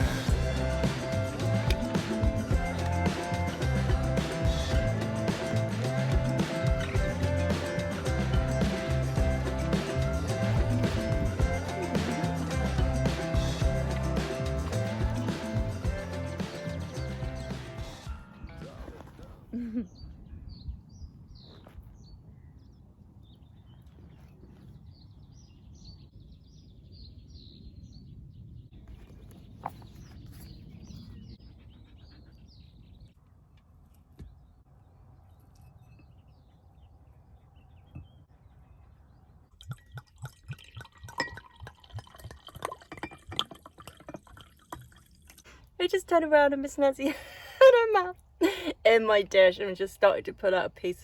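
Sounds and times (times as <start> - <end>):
low outdoor rumble: 0.0 - 20.0
small birds chirping: 0.0 - 39.6.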